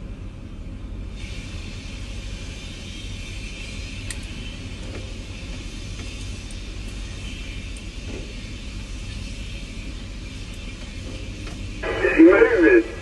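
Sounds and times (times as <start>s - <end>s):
hiss: 1.1s - 12.2s
steady low rumble: 9.6s - 13.0s.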